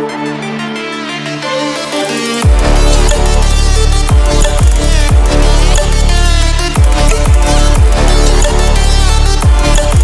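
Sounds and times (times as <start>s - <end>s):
sustained synth notes: 0.0s - 10.0s
heavy bass drop: 2.4s - 10.0s.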